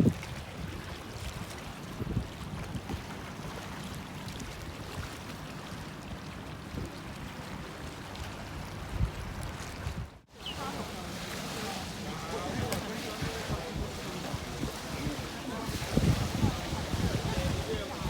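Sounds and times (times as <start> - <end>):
wind buffeting microphone: 0.0 - 3.2, 8.2 - 18.0
waterside noise: 0.0 - 18.0.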